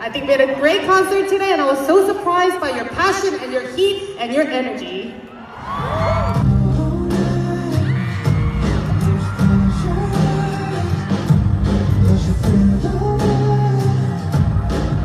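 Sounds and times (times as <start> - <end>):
crowd whooping and screaming: 5.2 - 15.0
live pop music with singing: 5.6 - 15.0.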